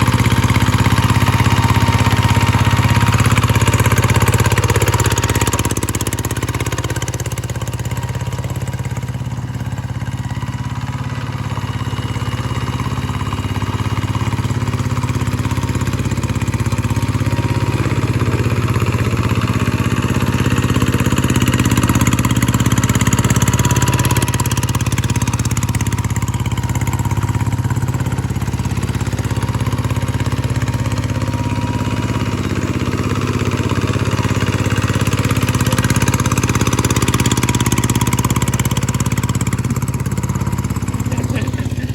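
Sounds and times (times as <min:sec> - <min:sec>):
hand tractor engine running: 0:00.0 - 0:41.9.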